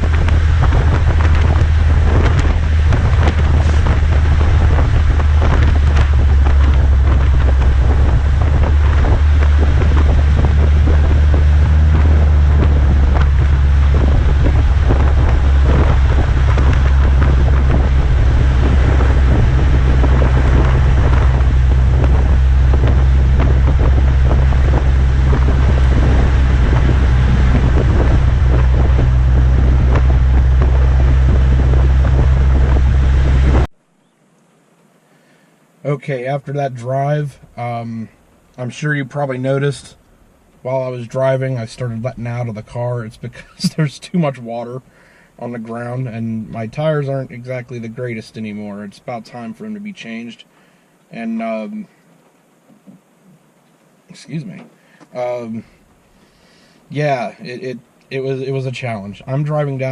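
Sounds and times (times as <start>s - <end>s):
rain: 0.0s - 33.7s
wet road noise: 0.0s - 33.7s, 35.9s - 53.0s
wind buffeting microphone: 0.0s - 33.7s
car exhaust droning: 0.0s - 33.8s, 35.9s - 50.5s.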